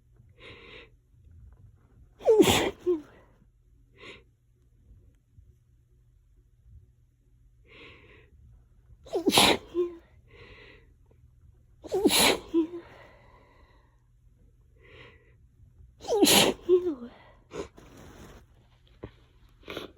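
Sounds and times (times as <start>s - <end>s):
person sneezing: 2.2s - 3.2s, 9.1s - 10.0s, 11.9s - 13.0s, 16.0s - 18.2s.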